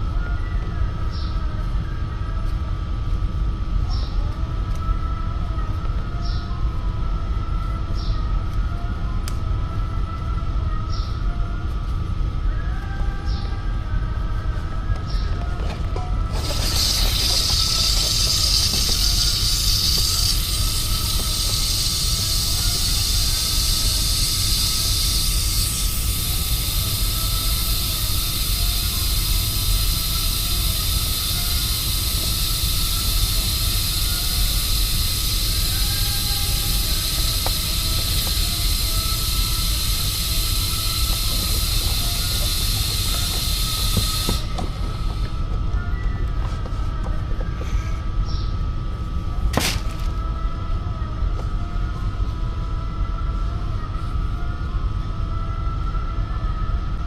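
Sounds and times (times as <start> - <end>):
gas hissing from hose: 16.3 - 45.5.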